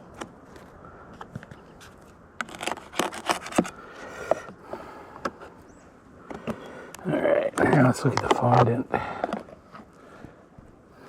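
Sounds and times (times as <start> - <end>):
clicks and knocks of handled parts: 6.3 - 9.5.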